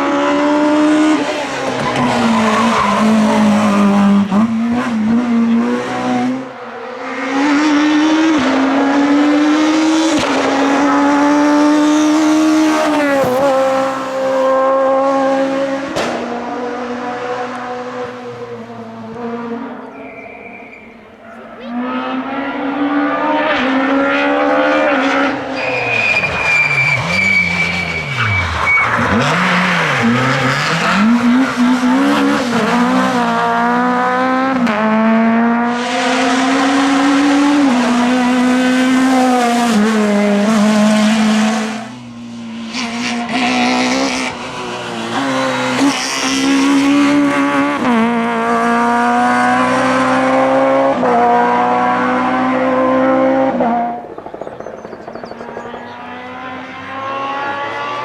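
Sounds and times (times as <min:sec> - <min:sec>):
rally car engines accelerating: 0:00.0 - 0:58.0
tyre squeal: 0:01.4 - 0:03.8, 0:19.8 - 0:21.8, 0:25.4 - 0:32.5.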